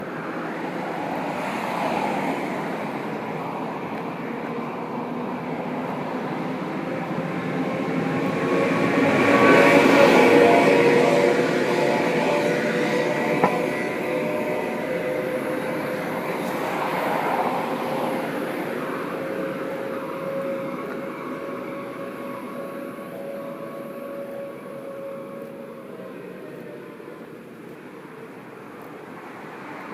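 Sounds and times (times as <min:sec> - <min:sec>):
steady whine: 0:02.6 - 0:29.2
truck engine: 0:02.7 - 0:28.9.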